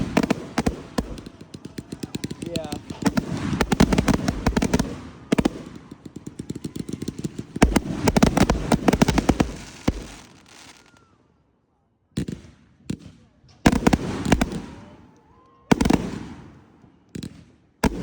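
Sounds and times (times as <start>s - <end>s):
fireworks crackling and banging: 0.0s - 11.2s, 12.2s - 18.0s.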